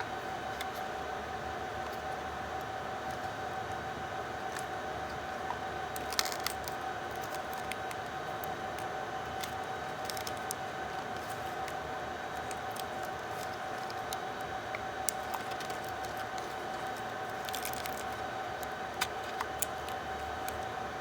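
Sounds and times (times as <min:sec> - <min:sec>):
high-pitched electrical hum: 0:00.0 - 0:21.0
laptop parts clicking and tapping: 0:06.0 - 0:20.6.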